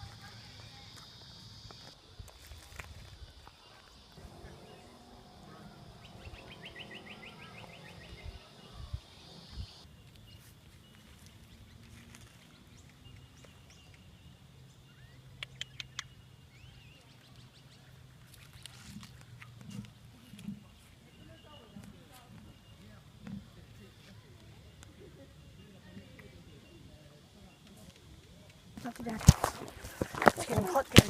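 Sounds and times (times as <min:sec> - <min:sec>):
sharp clicks: 0:15.4 - 0:16.1.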